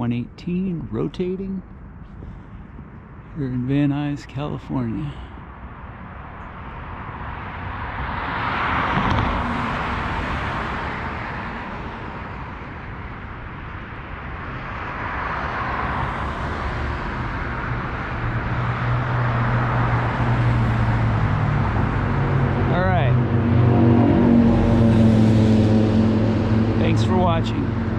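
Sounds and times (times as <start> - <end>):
cars passing: 0.0 - 27.9
low engine hum: 15.8 - 27.9.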